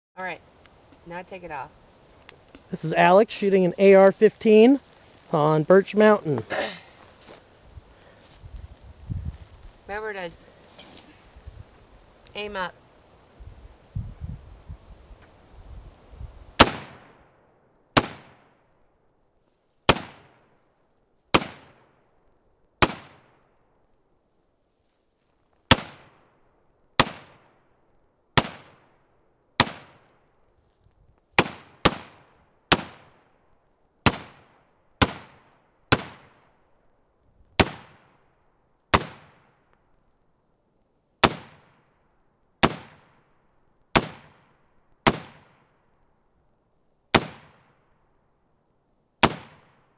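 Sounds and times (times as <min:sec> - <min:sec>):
rifle shots with echo: 0:16.6 - 0:17.3, 0:18.0 - 0:18.6, 0:21.3 - 0:21.9, 0:22.8 - 0:23.4, 0:28.4 - 0:28.9, 0:29.6 - 0:30.1, 0:31.4 - 0:33.2, 0:34.0 - 0:36.4, 0:44.0 - 0:45.7, 0:49.2 - 0:49.8.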